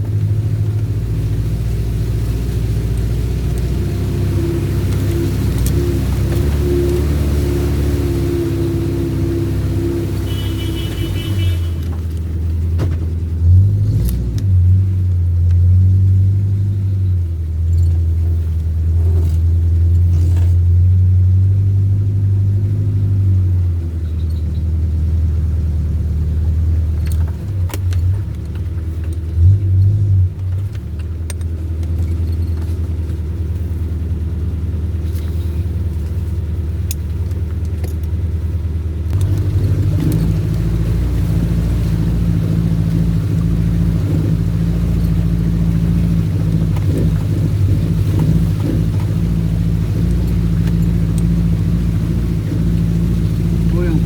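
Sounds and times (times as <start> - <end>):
vehicle engine droning under load: 0.0 - 54.0
sharp knocks and rattles: 26.4 - 33.6.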